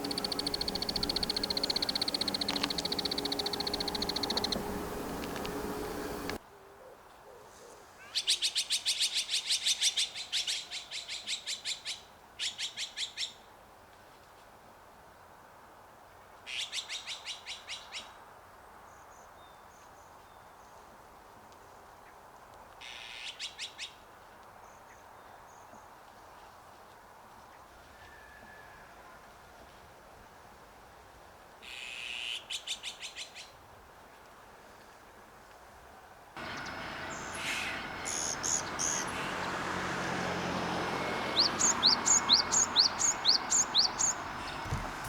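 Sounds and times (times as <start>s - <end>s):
faint high chirps: 0.0s - 6.4s
magpies chattering: 0.0s - 6.4s, 36.4s - 40.2s, 40.8s - 44.8s.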